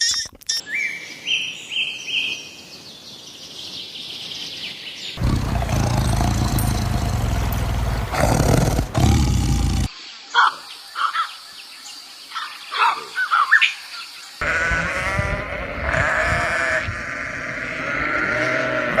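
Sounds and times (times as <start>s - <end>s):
livestock bleating: 14.4s - 19.0s.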